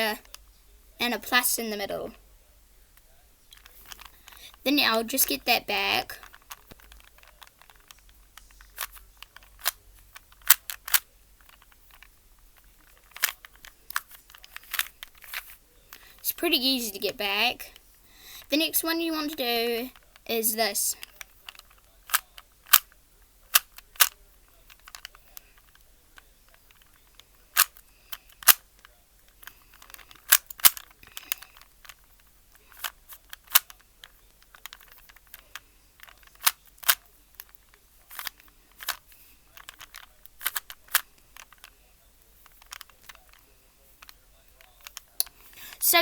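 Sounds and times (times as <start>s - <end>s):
puzzle cube layers clicking: 3.5s - 16.2s, 21.0s - 46.0s.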